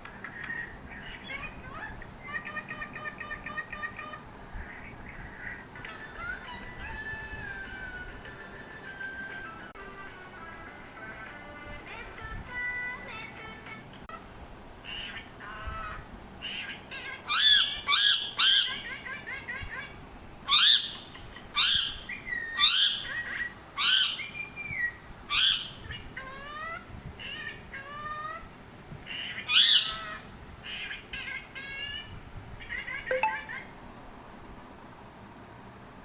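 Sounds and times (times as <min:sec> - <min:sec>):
parrot squawking: 0:14.8 - 0:19.5, 0:20.5 - 0:28.4, 0:29.1 - 0:33.6
parrot chirps and whistles: 0:17.3 - 0:18.8, 0:20.5 - 0:21.0, 0:21.6 - 0:25.8.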